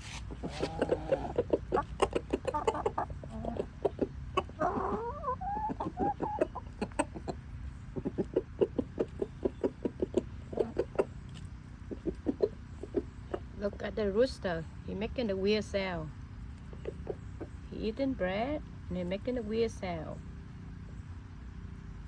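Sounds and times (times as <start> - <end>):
rapid clucks: 0.0 - 13.8, 16.4 - 17.7.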